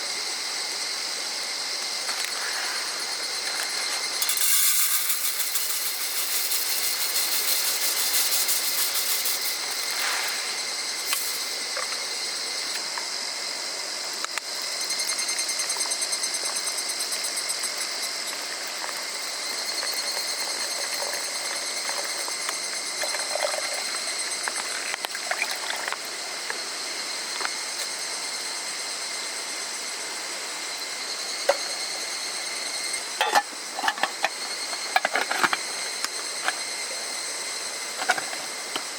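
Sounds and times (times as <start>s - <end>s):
running water hiss: 0.0s - 28.4s
cicadas trilling: 0.0s - 38.9s.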